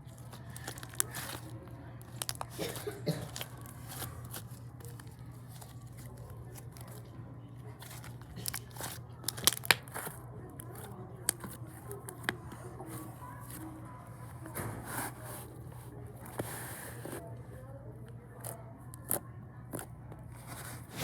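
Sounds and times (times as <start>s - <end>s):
slime crackling and popping: 0.2s - 5.8s, 7.8s - 11.6s
slime squished by hand: 7.8s - 12.4s.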